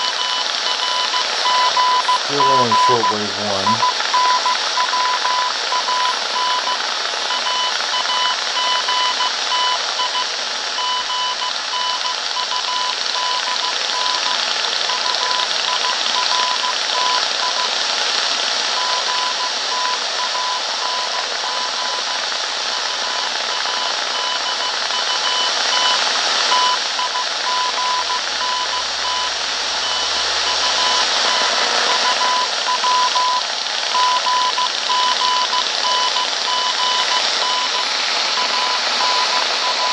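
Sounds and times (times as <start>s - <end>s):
radio static hiss: 0.0s - 8.6s, 19.6s - 39.9s
morse code beeps: 0.0s - 10.2s, 23.0s - 39.9s.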